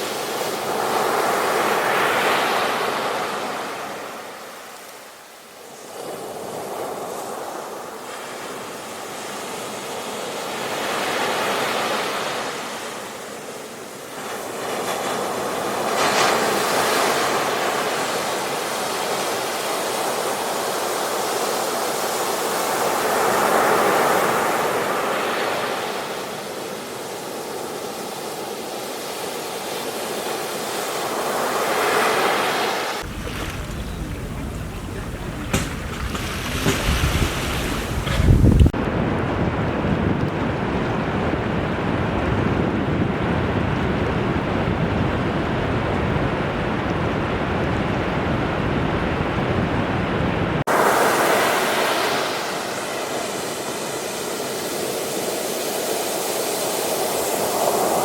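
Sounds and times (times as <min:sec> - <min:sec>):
ocean waves breaking: 0:30.3 - 0:39.7, 0:50.6 - 0:58.0.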